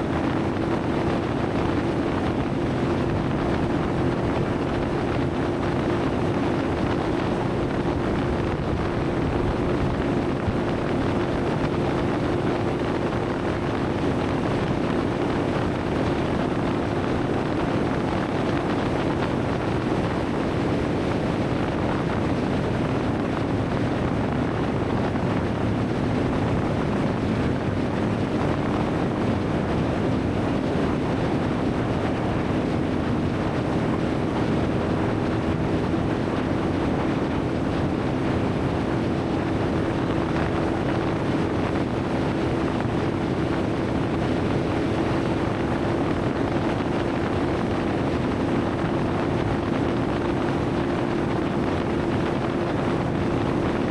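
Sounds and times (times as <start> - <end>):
outboard motor running: 0.0 - 53.9
wind noise on microphone: 0.0 - 53.9.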